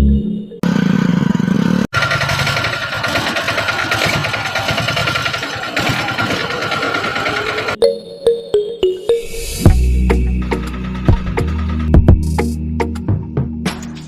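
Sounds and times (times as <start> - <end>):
motor running with fast rattle: 0.8 - 7.8.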